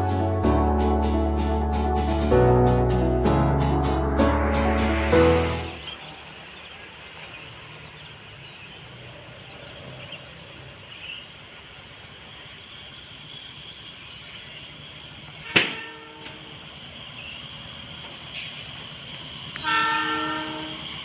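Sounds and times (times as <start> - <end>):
insect drone: 4.9 - 21.0
sharp loud click: 15.5 - 16.4.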